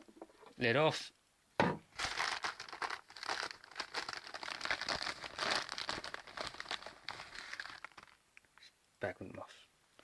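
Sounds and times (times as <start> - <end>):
material crinkling and rustling: 1.9 - 8.2.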